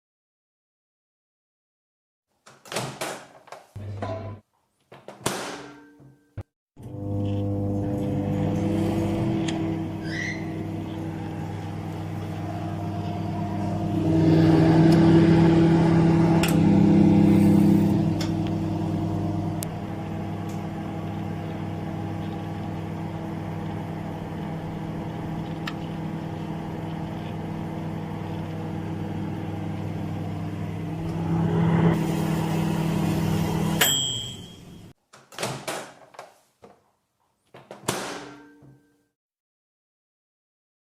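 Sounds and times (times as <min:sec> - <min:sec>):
microwave oven humming: 0:06.8 - 0:35.0.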